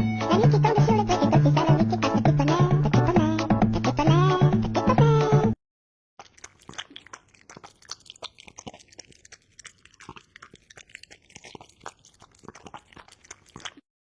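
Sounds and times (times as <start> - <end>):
cat chewing crunchy food: 6.2 - 13.9.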